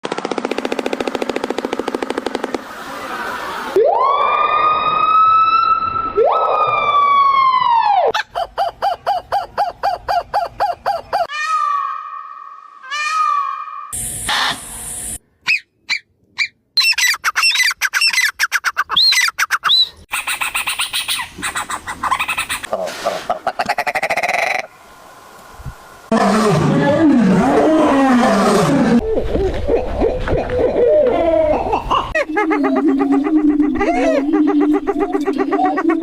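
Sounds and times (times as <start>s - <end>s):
long rising animal calls: 26.1s - 36.0s.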